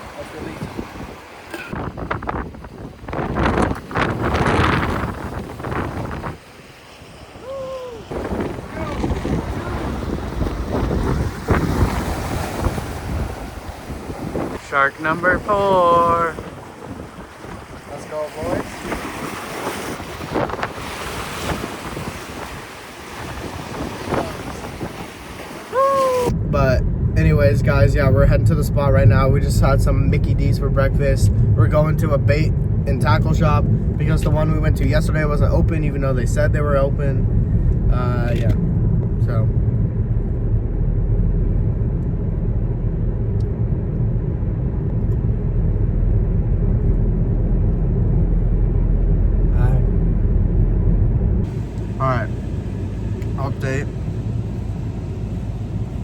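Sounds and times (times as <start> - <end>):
ocean surf: 0.0 - 38.6, 51.4 - 56.0
wind buffeting microphone: 0.0 - 56.0
car driving rumble from inside: 7.4 - 19.2, 23.3 - 56.0.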